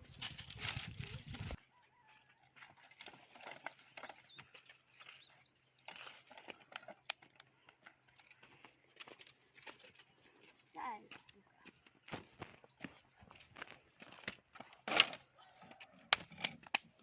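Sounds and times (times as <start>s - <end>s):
bird chirping: 3.4s - 14.0s.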